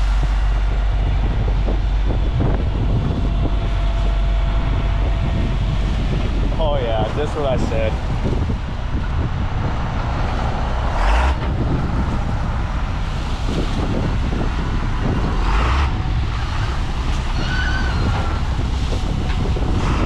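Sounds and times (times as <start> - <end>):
heavy machine engine rumbling: 0.0 - 20.0
brief high squeal: 17.3 - 18.4.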